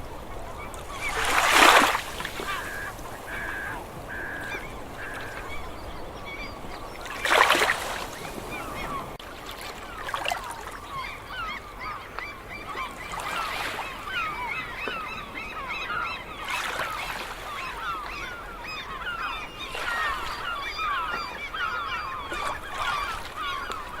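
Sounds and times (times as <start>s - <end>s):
flock of gulls calling: 0.0s - 24.0s.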